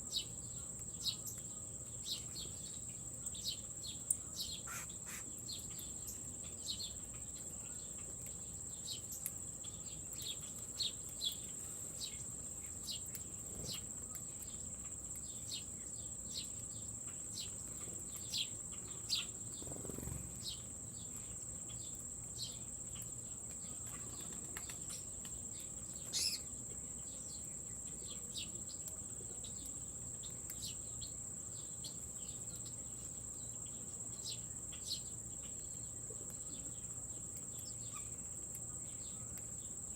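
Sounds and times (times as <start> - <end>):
insect trill: 0.1 - 39.9
bird chirps: 3.4 - 8.0, 26.0 - 26.5.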